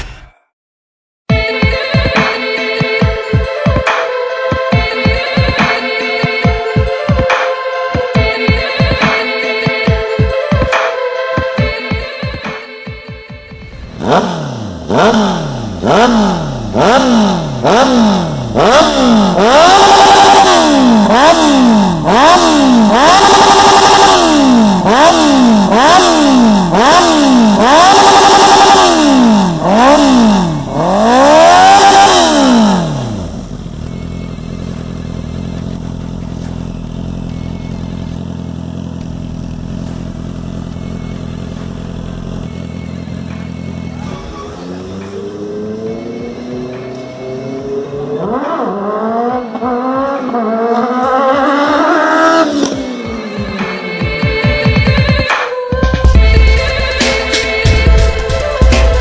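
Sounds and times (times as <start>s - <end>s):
motorcycle engine revving: 13.4s - 55.3s
motorcycle engine idling: 13.5s - 46.2s.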